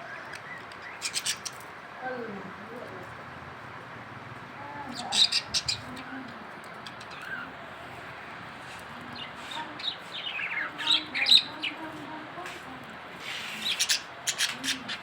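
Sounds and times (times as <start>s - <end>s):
budgerigars chirping: 0.8s - 1.6s, 5.0s - 6.0s, 13.3s - 15.0s.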